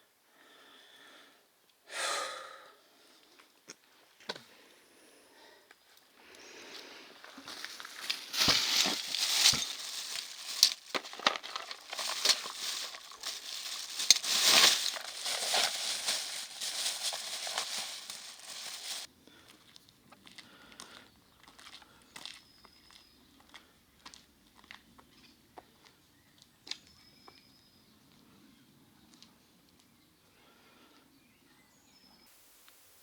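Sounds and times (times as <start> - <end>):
rustling and crinkling: 7.2 - 19.1.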